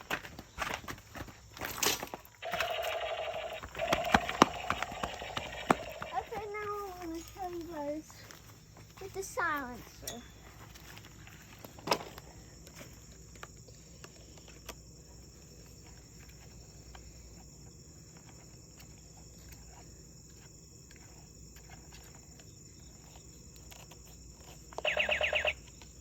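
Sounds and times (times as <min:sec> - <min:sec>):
toy gun electronic sound effect: 0:02.4 - 0:06.4, 0:24.8 - 0:25.7.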